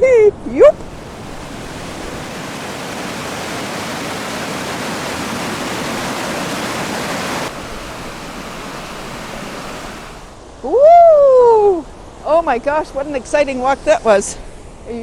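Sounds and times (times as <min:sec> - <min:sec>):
river rapids rushing: 0:00.6 - 0:10.4.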